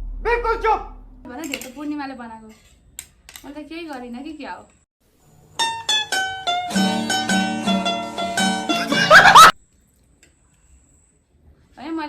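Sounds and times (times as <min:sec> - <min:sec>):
plucked string music: 0:05.6 - 0:09.5.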